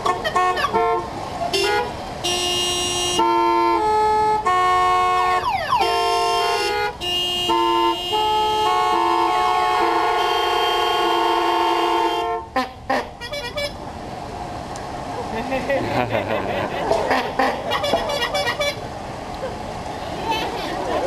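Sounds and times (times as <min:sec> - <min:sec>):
car horns playing chords: 0:00.0 - 0:13.8, 0:17.1 - 0:18.8.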